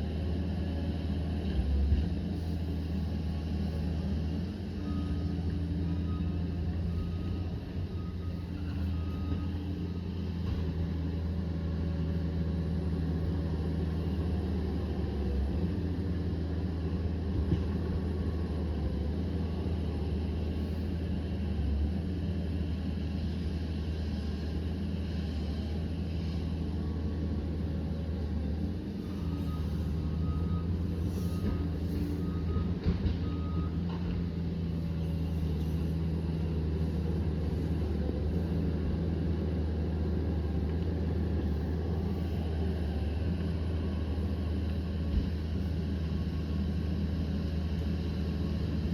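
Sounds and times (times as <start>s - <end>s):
diesel engine running: 0.0s - 48.9s
reversing alarm beeps: 4.8s - 10.7s, 29.0s - 34.0s.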